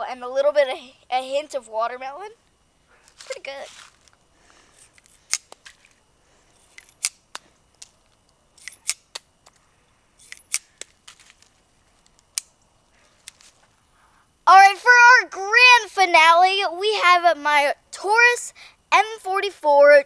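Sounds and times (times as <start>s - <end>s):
sharp light clicks and taps: 6.8s - 9.7s, 10.3s - 13.7s.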